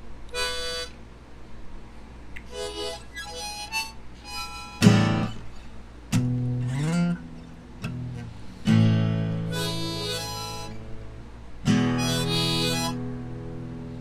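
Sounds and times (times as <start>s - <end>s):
harmonica: 0.3s - 1.0s, 2.5s - 5.4s, 8.6s - 14.0s
strummed acoustic guitar: 4.7s - 14.0s.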